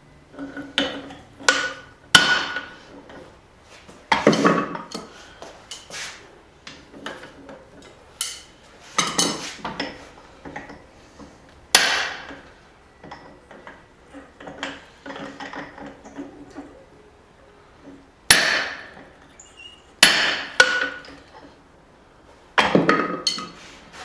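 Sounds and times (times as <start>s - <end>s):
hammer striking steel on anvil: 11.8s - 12.3s, 18.3s - 19.0s, 20.0s - 21.0s.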